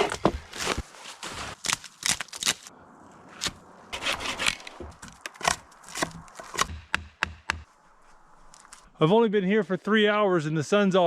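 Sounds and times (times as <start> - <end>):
scraping and rubbing on wood: 4.0 - 5.2.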